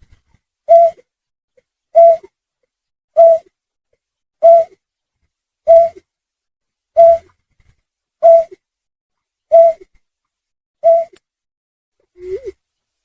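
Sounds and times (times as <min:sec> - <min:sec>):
low hooting bird call: 0:00.7 - 0:01.0, 0:01.9 - 0:02.3, 0:03.2 - 0:03.5, 0:04.4 - 0:04.8, 0:05.7 - 0:06.0, 0:07.0 - 0:07.3, 0:08.2 - 0:08.6, 0:09.5 - 0:09.9, 0:10.8 - 0:11.2.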